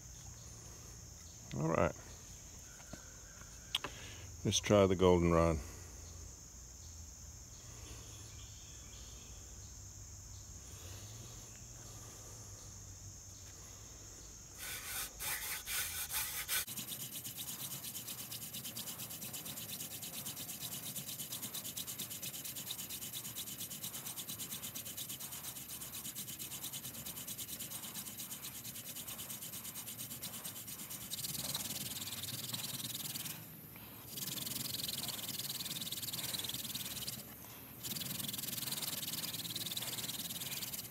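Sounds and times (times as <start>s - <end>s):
crickets chirping: 0.0s - 40.9s
hand drill rubbing on wood: 14.6s - 40.9s.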